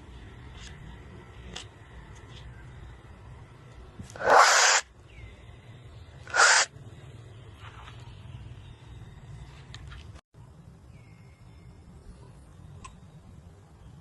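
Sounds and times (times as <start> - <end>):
baby monkey screeching: 4.2 - 4.9, 6.3 - 6.7.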